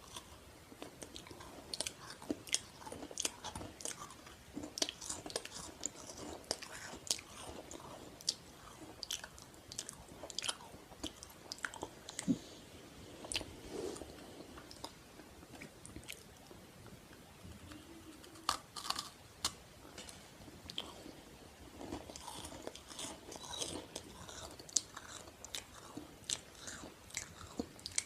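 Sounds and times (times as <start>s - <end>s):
crunchy chewing: 0.0s - 12.4s, 18.2s - 21.2s, 21.8s - 28.0s.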